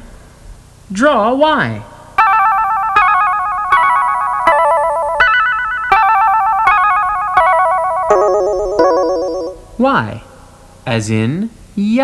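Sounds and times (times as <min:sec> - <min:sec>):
warbling synthesizer melody: 0:02.2 - 0:09.7.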